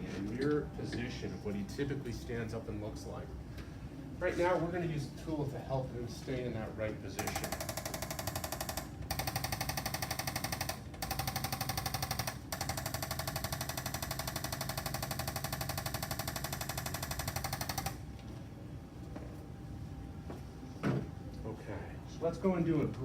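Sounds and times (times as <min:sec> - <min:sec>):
motorised percussion tool buzzing: 0:07.2 - 0:18.0.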